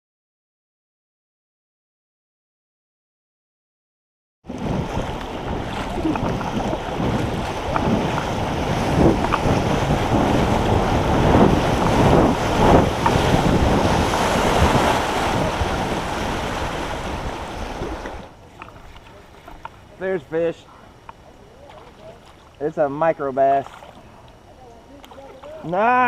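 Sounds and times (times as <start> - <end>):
wind buffeting microphone: 4.5 - 19.7
rushing water: 4.5 - 26.0.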